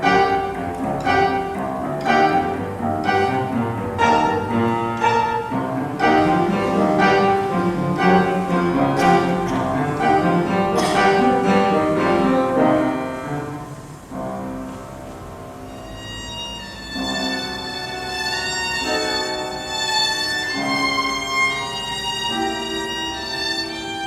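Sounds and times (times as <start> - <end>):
held string lines: 0.0 - 14.2
piano notes and chords: 0.0 - 24.0.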